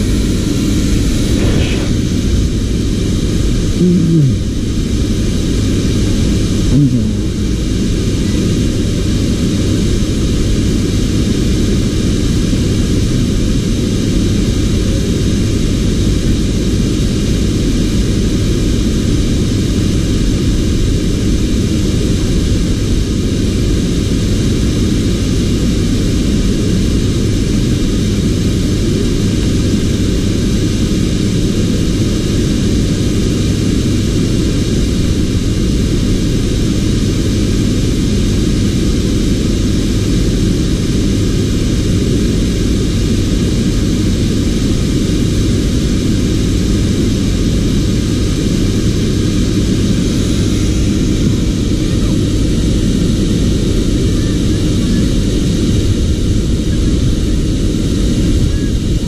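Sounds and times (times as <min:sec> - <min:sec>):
machine running: 0:00.0 - 0:04.6
short rising whine: 0:00.0 - 0:04.6.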